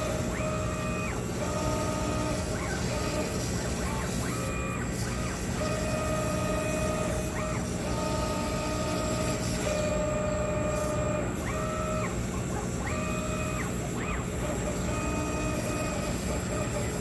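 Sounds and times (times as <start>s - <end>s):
gantry motors whining: 0.0s - 17.0s
steady mechanical hum: 0.0s - 17.0s.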